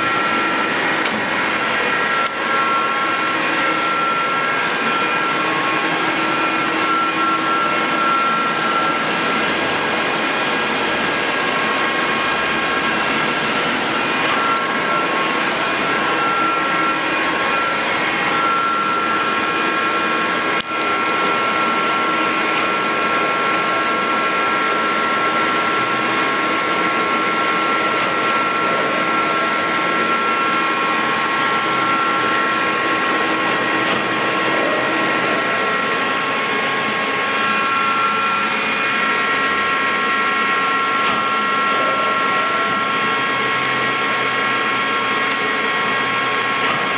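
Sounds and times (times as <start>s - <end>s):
high whining tones: 0.0s - 10.6s
lathe mechanical drone: 0.0s - 46.9s.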